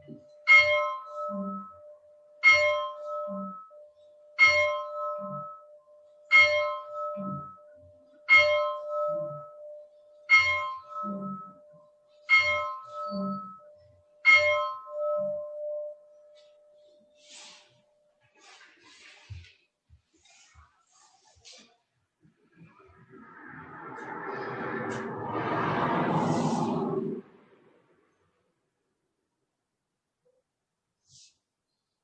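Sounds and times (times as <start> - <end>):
bell hum: 0.5 - 17.3.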